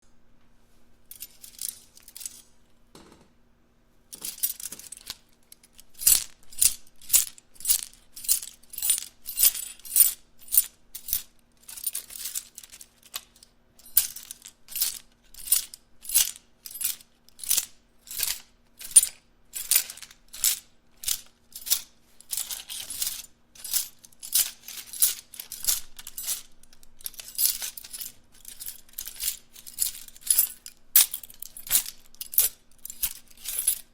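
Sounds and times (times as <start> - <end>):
small metal items rattling: 1.1 - 2.5, 4.1 - 33.9.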